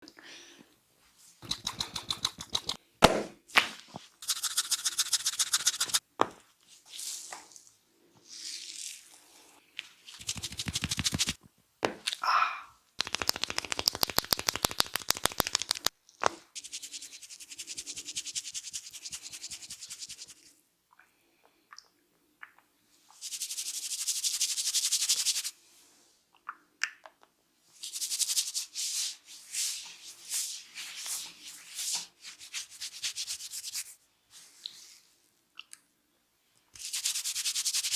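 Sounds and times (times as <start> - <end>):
hands rubbing through hair: 1.4 - 2.8, 3.8 - 6.0, 10.0 - 11.4, 13.0 - 15.9, 16.6 - 20.5, 27.8 - 35.0, 36.8 - 37.9
rapid tapping strokes on head: 1.4 - 2.8, 4.2 - 6.0, 10.2 - 11.4, 13.0 - 15.9, 16.6 - 20.4.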